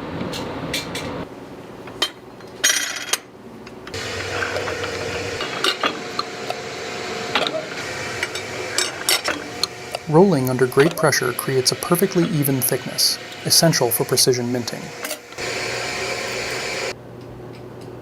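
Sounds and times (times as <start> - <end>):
steady machine hum: 3.8 - 17.0.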